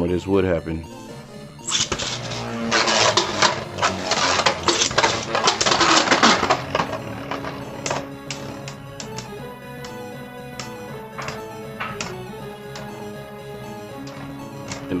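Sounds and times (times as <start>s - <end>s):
spinning tops clattering: 1.7s - 9.3s.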